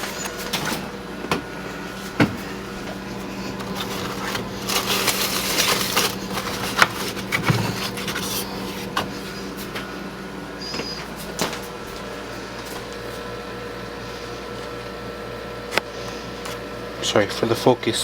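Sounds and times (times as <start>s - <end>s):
steady electrical hum: 0.0s - 18.0s
rustling: 3.3s - 9.0s.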